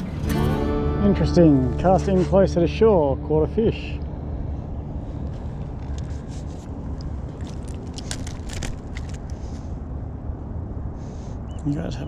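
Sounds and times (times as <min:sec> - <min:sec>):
small clicks and rattles: 0:05.2 - 0:09.5.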